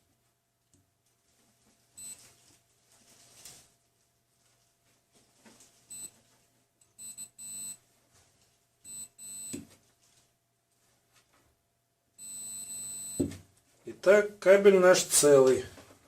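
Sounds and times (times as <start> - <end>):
multimeter continuity beeps: 2.0 - 2.2, 5.9 - 6.2, 6.9 - 7.8, 8.8 - 9.6, 12.2 - 13.3.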